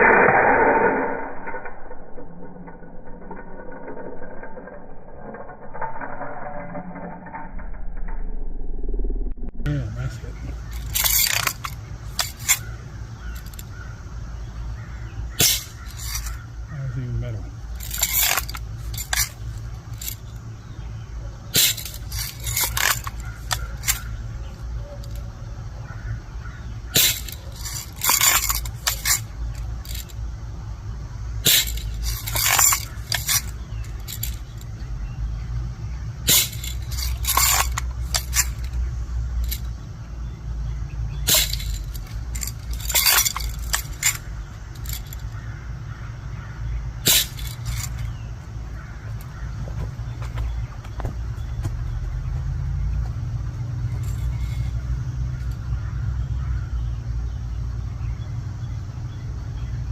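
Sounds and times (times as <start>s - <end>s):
steady low rumble: 0.0s - 59.9s
bbs clinking on toy metal: 10.6s - 12.7s, 15.4s - 16.4s, 17.7s - 20.4s, 21.5s - 24.2s, 27.0s - 30.2s, 31.4s - 34.8s, 36.3s - 38.8s, 39.4s - 39.7s, 41.2s - 45.4s, 47.0s - 48.1s.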